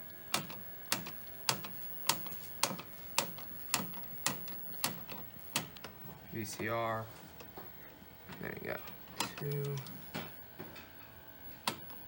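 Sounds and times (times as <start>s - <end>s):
television channel selector clicking: 0.3s - 6.0s, 8.4s - 10.0s, 11.6s - 12.0s.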